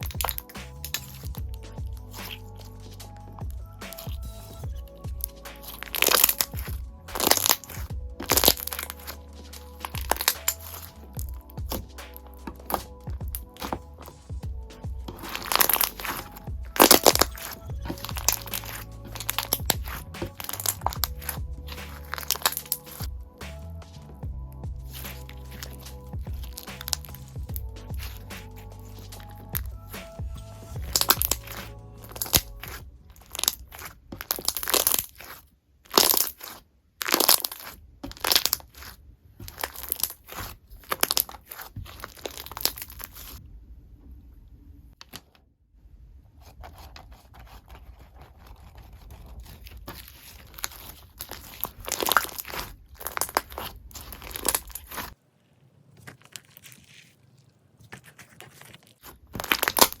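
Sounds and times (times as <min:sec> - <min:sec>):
slime crackling and popping: 0:00.0 - 0:03.0, 0:03.9 - 0:14.2, 0:15.1 - 0:23.1, 0:24.9 - 0:27.3, 0:30.8 - 0:43.4, 0:48.4 - 0:55.2, 0:56.0 - 1:00.0.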